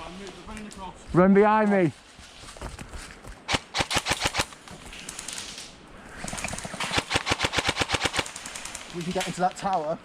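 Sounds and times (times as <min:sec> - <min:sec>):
airsoft guns firing bursts: 0:03.5 - 0:04.5, 0:06.2 - 0:08.9.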